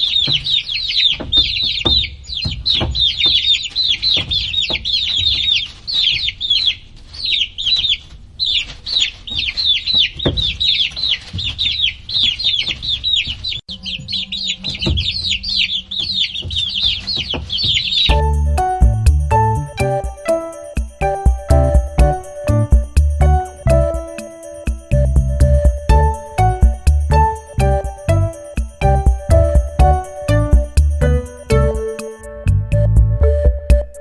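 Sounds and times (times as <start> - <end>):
low thumps: 18.1 - 34.0.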